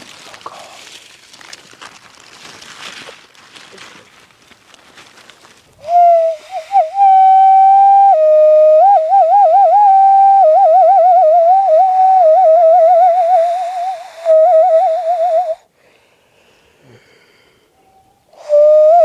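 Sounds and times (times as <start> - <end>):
person whistling with trills: 5.8 - 15.6, 17.8 - 19.0.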